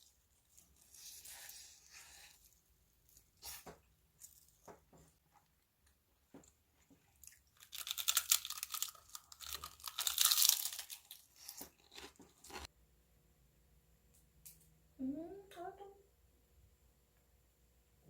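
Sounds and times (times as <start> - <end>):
cat crunching dry treats: 7.2 - 12.7.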